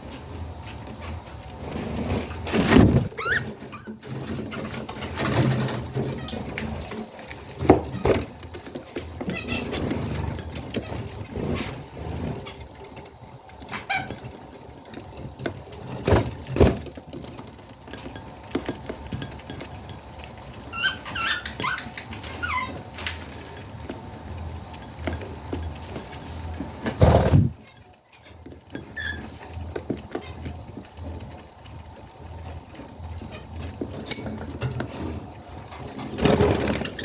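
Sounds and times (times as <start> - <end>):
low background hum: 0.0 - 37.0
budgies chirping: 3.0 - 3.9, 20.7 - 22.8.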